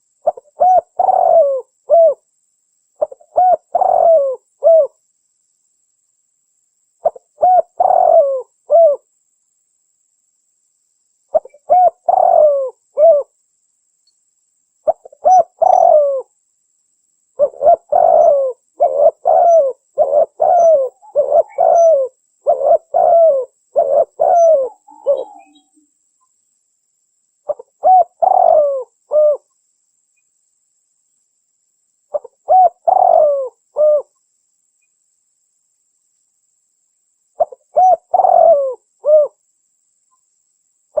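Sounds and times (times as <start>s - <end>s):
dove cooing: 0.0s - 2.2s, 3.0s - 5.0s, 7.0s - 9.1s, 11.3s - 13.3s, 14.8s - 16.3s, 17.4s - 25.8s, 27.5s - 29.5s, 32.1s - 34.1s, 37.4s - 39.4s.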